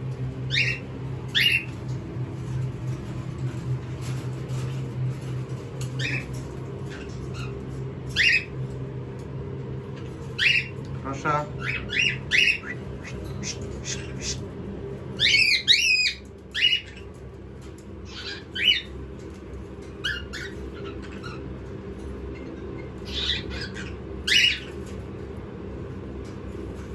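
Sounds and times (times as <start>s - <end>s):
parrots squawking: 0.5s - 1.8s, 5.8s - 8.6s, 10.0s - 17.1s, 18.0s - 19.0s, 19.9s - 25.0s.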